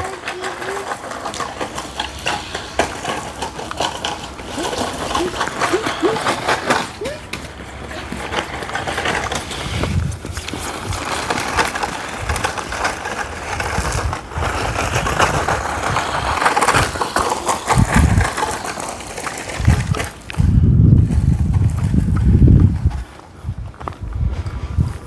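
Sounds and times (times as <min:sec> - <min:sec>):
toy truck crunching over rough ground: 0:00.0 - 0:25.0.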